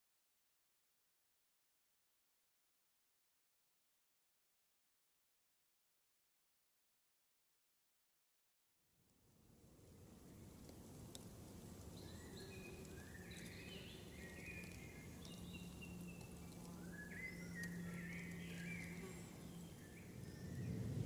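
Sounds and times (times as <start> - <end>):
faint steady hum: 9.1 - 21.0
low background rumble: 9.4 - 21.0
birds whistling: 11.9 - 21.0.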